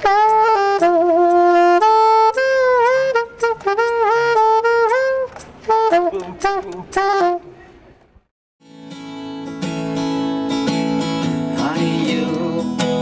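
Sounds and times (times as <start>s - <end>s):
saxophone playing slow melody: 0.0s - 7.6s.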